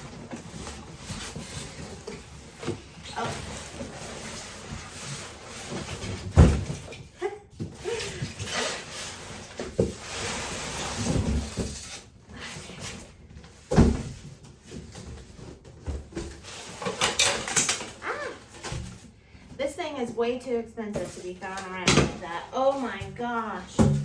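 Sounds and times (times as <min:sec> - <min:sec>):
packaging rustling and scraping: 0:00.0 - 0:06.9, 0:07.9 - 0:19.5, 0:20.9 - 0:24.0
heavy thuds: 0:22.9 - 0:24.0.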